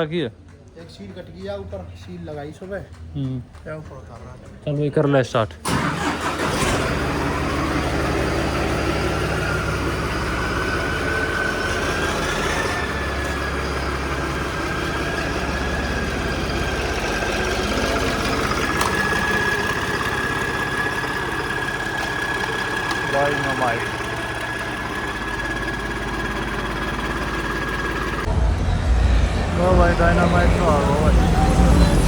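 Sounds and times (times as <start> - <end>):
tractor engine idling: 0.8 - 32.0
high whine: 25.2 - 32.0.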